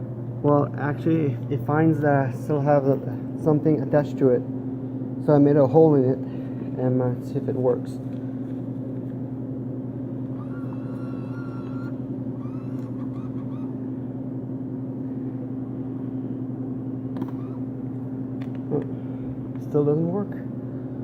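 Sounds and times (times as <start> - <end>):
vending machine hum: 0.0 - 21.0.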